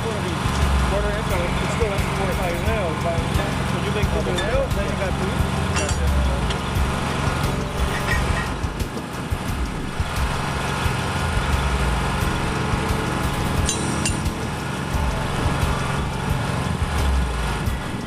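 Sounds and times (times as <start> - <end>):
tracked machinery engine running: 0.0 - 18.0
sharp metallic clinks: 1.6 - 6.8, 13.2 - 16.2.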